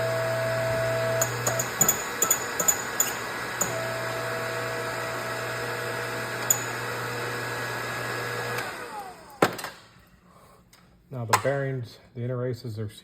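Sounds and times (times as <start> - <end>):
electric motor running: 0.0 - 9.4.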